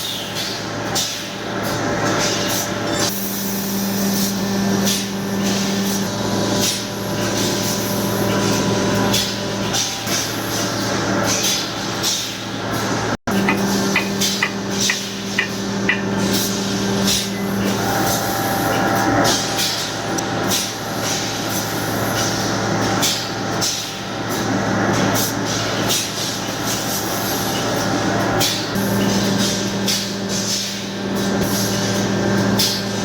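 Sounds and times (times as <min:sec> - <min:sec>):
air compressor running: 0:13.3 - 0:18.6
irregular clicks and knocks: 0:13.4 - 0:16.2.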